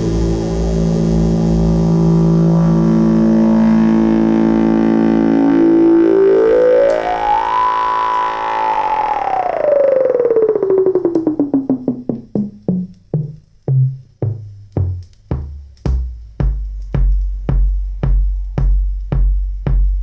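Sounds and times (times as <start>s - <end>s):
electronic drum hit falling in pitch: 5.5s - 18.8s
deep kick-drum beat: 11.2s - 20.0s.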